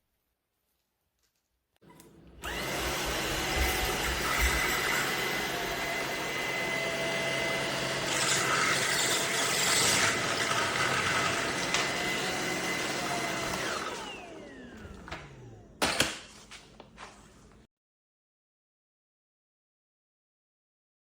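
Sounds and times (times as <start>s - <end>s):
stick vacuum running: 1.8s - 17.6s.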